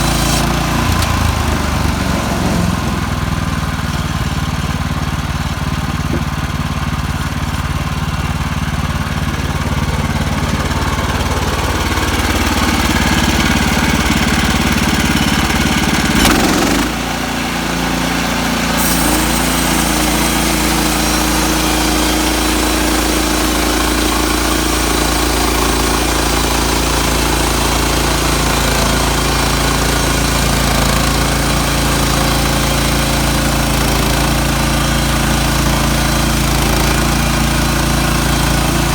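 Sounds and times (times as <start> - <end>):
band blade cutting log: 0.0 - 1.3, 15.0 - 17.1, 18.7 - 26.8
petrol engine running: 0.0 - 38.9.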